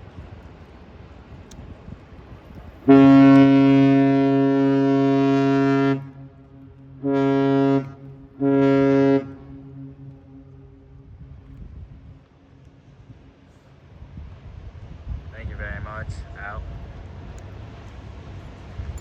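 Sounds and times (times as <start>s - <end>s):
ship's horn blasts: 2.8s - 13.2s.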